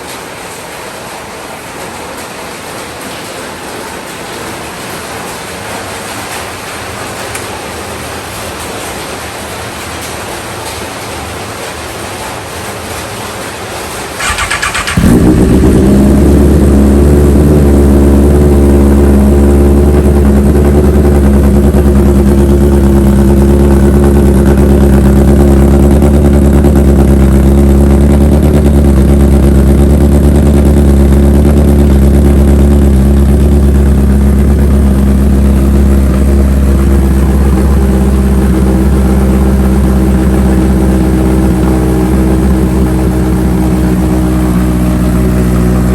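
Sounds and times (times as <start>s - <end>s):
motorcycle engine idling loudly: 14.1s - 45.9s
engine starter cranking: 14.2s - 16.0s.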